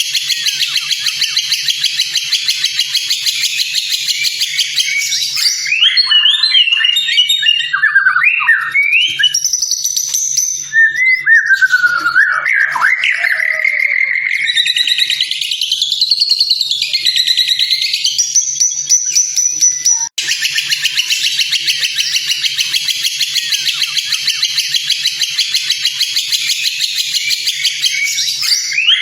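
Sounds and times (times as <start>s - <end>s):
bird whistled phrases: 0.0s - 9.9s, 10.6s - 29.0s.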